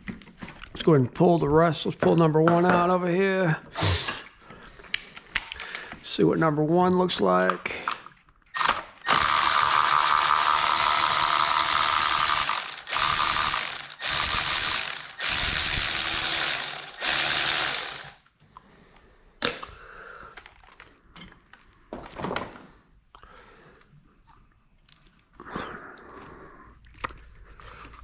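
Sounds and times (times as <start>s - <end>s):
power ratchet whirring: 8.6s - 18.2s.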